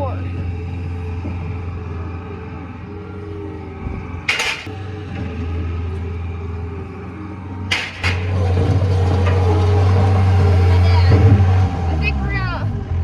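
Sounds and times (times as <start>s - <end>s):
engine idling: 0.0s - 11.4s
sharp metal clanks: 4.3s - 4.8s, 7.7s - 8.4s.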